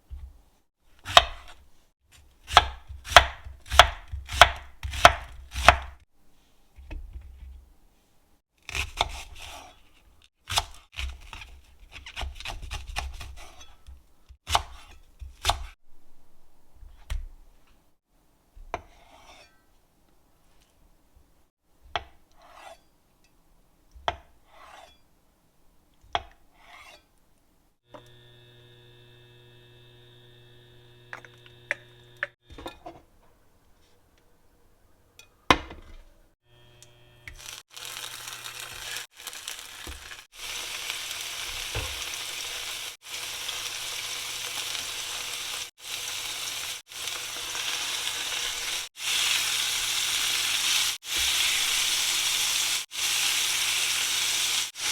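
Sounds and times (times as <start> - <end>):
knife chopping on cutting board: 1.0 - 1.6, 2.5 - 6.0, 14.5 - 15.7
knife scraping board: 18.8 - 19.6, 22.3 - 22.9, 24.5 - 25.0, 26.6 - 27.1.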